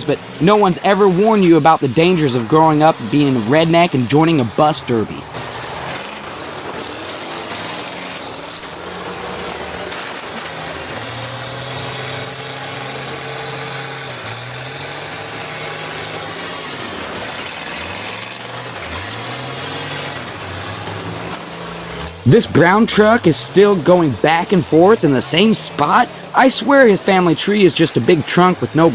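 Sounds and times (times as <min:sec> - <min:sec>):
bus engines revving: 0:00.0 - 0:28.9.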